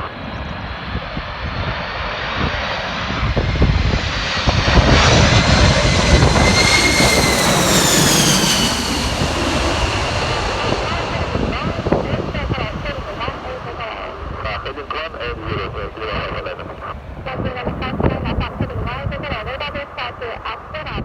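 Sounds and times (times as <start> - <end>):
jet airliner passing: 0.0 - 21.0
high engine whine dropping in pitch: 3.2 - 18.9.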